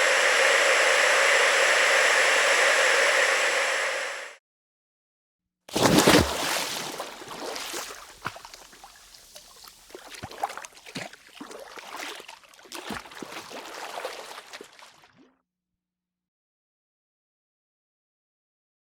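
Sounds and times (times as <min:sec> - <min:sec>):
loud water splash: 0:05.7 - 0:15.2
water sloshing and trickling: 0:05.7 - 0:15.3
water drips: 0:06.1 - 0:15.2.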